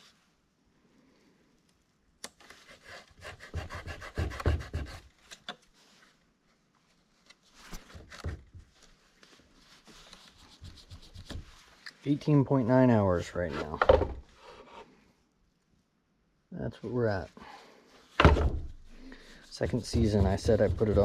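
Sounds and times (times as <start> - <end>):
rubbing and scraping handling noise: 2.4 - 15.1, 17.1 - 21.0.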